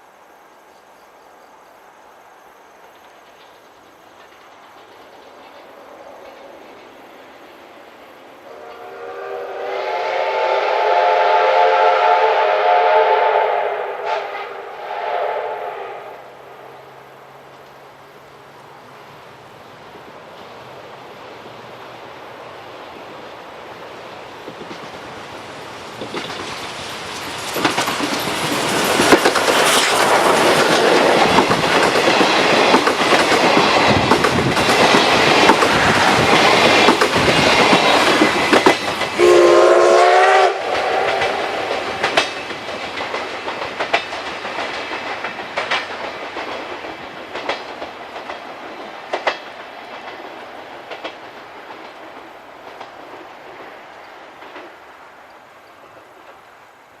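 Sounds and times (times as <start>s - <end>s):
train running noise: 2.6s - 55.0s
steam whistle blast: 8.4s - 16.7s, 39.2s - 41.9s
wheels clacking over rail joints: 24.4s - 39.2s, 40.7s - 53.8s.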